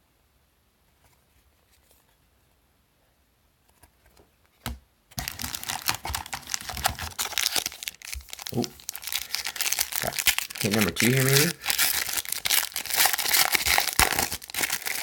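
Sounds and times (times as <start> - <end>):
wrapper crinkling and tearing: 5.2 - 15.0.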